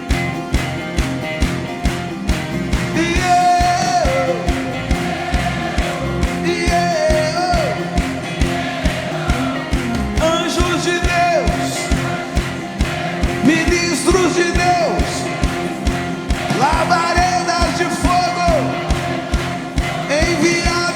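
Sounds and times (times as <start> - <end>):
steady drum beat: 0.0 - 20.9
worship band playing: 0.0 - 20.9.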